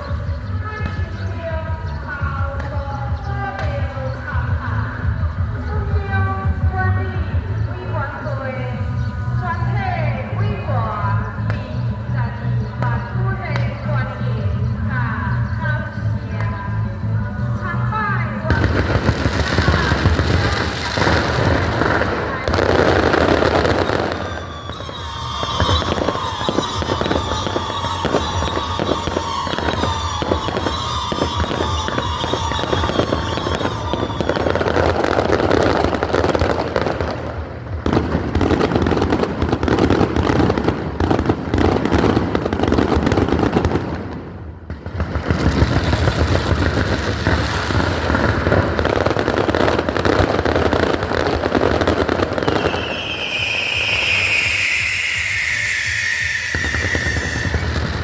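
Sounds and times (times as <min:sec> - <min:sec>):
fireworks bangs and crackle: 0:00.0 - 0:09.0, 0:17.5 - 0:58.0
fireworks whistles falling in pitch: 0:18.5 - 0:37.3, 0:45.2 - 0:58.0.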